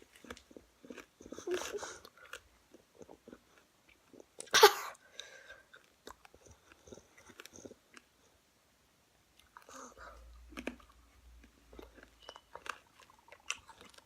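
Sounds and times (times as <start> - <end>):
chewing and wet mouth clicks: 5.2 - 8.1, 9.4 - 14.0.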